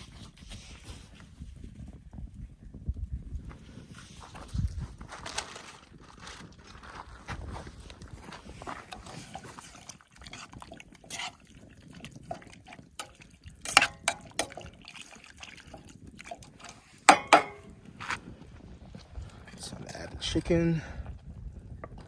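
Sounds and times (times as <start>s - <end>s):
liquid sloshing in a cooking pot: 8.4s - 19.4s.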